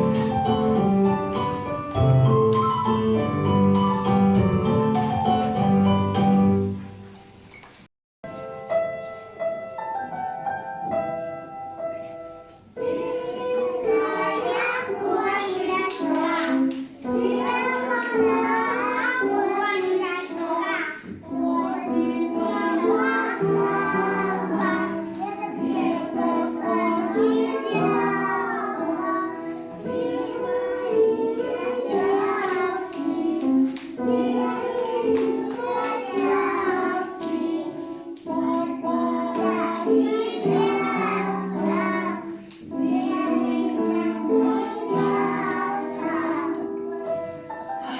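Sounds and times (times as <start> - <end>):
instrumental accompaniment: 0.0 - 7.5
small children singing: 12.1 - 47.9.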